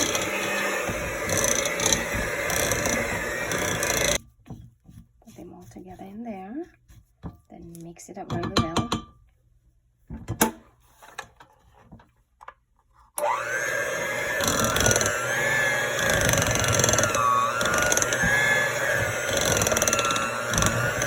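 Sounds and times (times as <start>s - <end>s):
electric mixer running: 0.0s - 4.2s, 13.2s - 21.0s.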